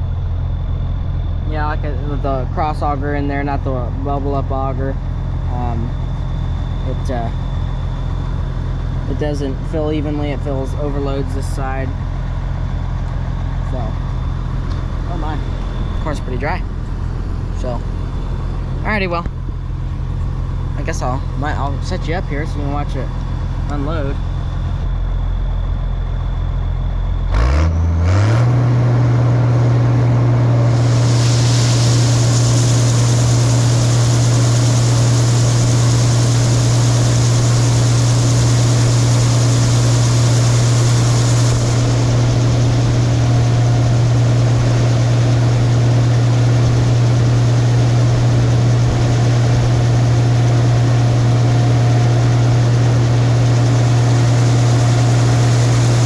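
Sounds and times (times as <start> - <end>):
combine engine throttling up: 0.0 - 56.0
grain auger hiss: 30.6 - 56.0.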